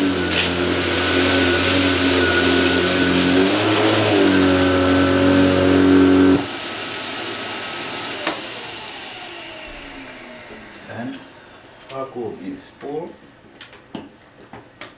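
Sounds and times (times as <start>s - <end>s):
motor winding down whine: 0.0s - 6.8s, 7.8s - 12.2s
vacuum cleaner running: 0.0s - 12.6s.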